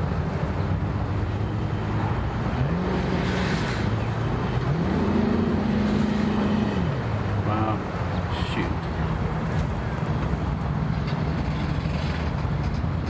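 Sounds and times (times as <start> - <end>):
engine running and revving: 0.0 - 8.1.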